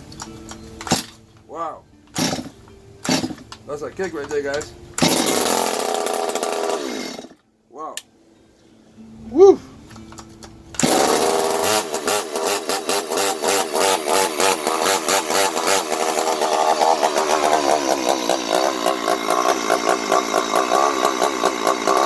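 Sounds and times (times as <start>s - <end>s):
chainsaw engine surging: 2.2s - 3.4s, 5.0s - 7.4s, 10.8s - 22.0s.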